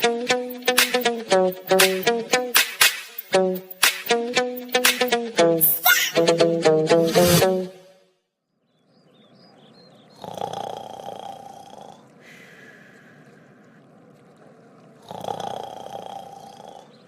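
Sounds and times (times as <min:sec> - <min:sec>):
person snoring: 0:10.2 - 0:12.1, 0:15.0 - 0:17.0
hissing breath out: 0:10.2 - 0:13.4.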